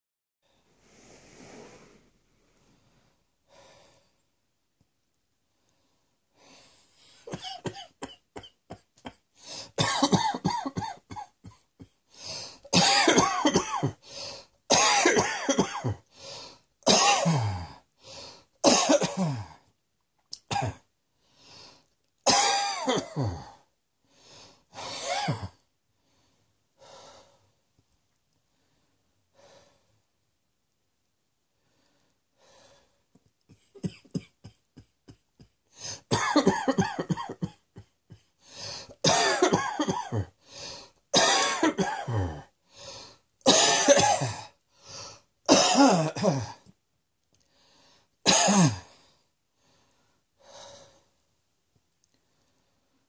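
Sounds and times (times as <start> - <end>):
person coughing: 7.3 - 9.2, 9.8 - 12.0, 12.8 - 14.0, 14.7 - 16.0, 16.9 - 17.8, 18.6 - 19.6, 22.3 - 23.6, 25.0 - 25.6, 33.5 - 38.3, 39.0 - 40.3, 41.2 - 42.5, 43.5 - 44.5, 45.5 - 46.7, 48.3 - 48.9.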